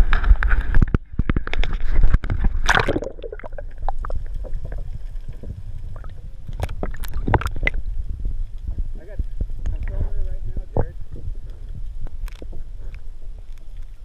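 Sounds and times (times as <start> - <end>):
steady low rumble: 0.0 - 14.0
water gurgling around a kayak: 0.0 - 14.0.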